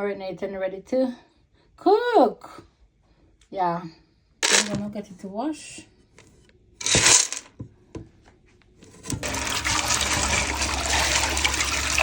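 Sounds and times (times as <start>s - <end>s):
water running into sink: 8.9s - 12.0s.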